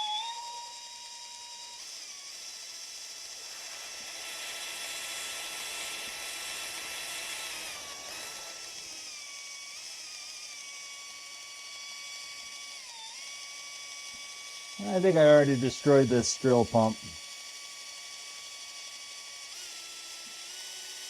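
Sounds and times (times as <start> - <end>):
electric drill motor whine: 0.0 - 21.0.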